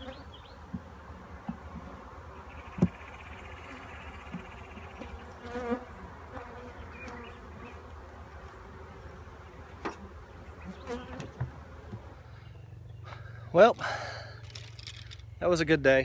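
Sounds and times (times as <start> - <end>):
honeybees buzzing: 0.0 - 15.6.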